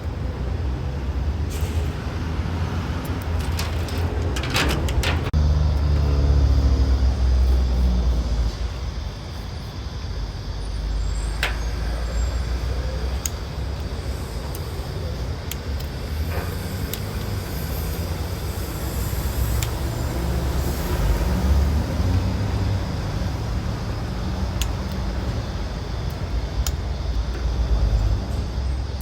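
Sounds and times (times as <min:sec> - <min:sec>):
sharp metallic clicks: 0:13.0 - 0:17.4.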